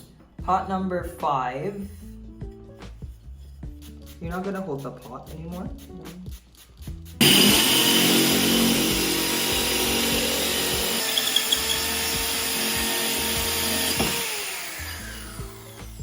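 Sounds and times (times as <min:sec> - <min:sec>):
electric drill boring ceramic: 0:07.2 - 0:16.0.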